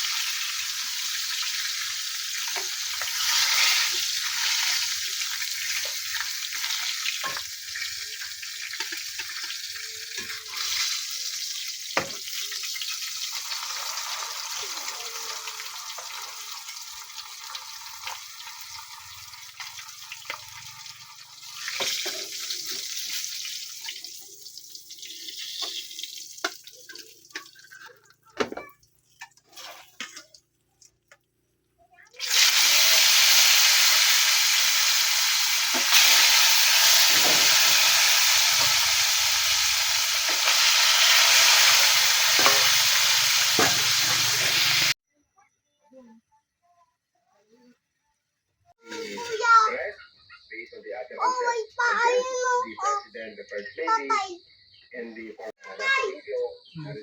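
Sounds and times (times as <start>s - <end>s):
food sizzling in a pan: 0.0s - 30.9s, 32.0s - 45.0s, 48.8s - 49.6s.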